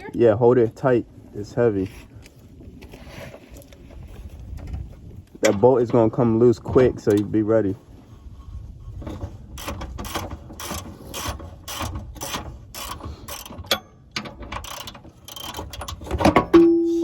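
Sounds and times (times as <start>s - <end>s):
hand ratchet clicking: 9.6s - 13.9s, 14.5s - 16.0s.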